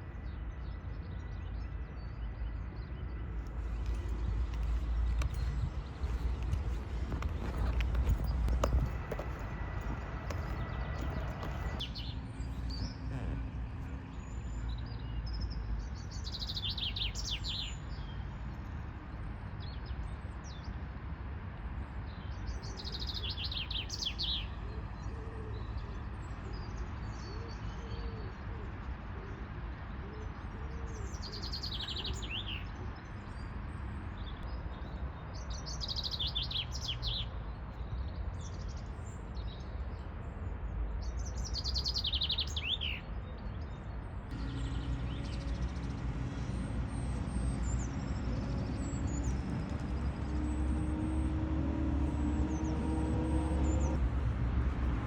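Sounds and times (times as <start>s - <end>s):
songbird singing: 0.0s - 18.2s, 22.2s - 28.8s, 30.9s - 55.0s
low background rumble: 3.0s - 14.7s.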